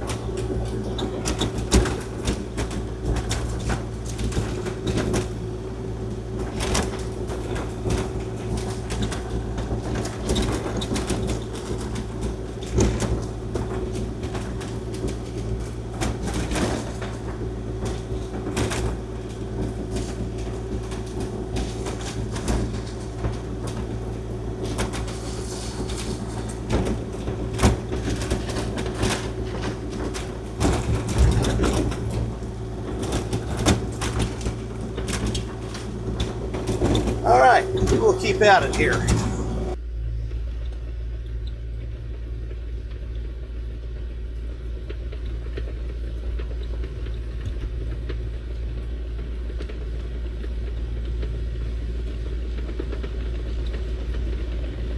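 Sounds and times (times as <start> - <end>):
diesel engine running under load: 0.0 - 54.9
tracks clattering over gravel: 0.1 - 39.8.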